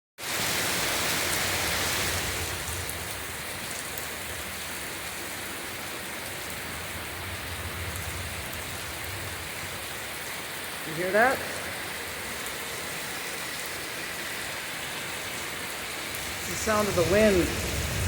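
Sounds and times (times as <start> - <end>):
water running down a mountainside: 0.2 - 18.0
wind rushing: 16.1 - 18.0.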